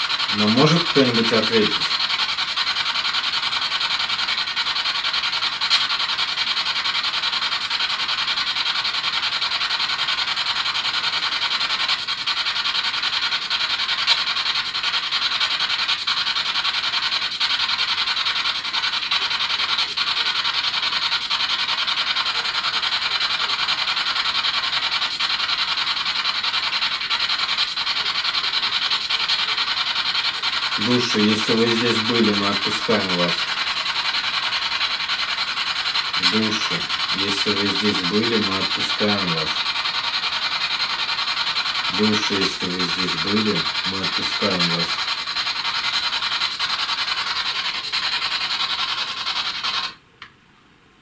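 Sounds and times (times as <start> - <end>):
radio static hiss: 0.0 - 2.0, 30.8 - 40.1, 41.7 - 45.0.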